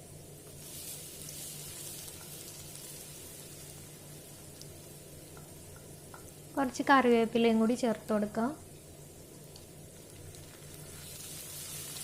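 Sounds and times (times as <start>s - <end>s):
aromatics sizzling in oil: 0.0s - 12.0s.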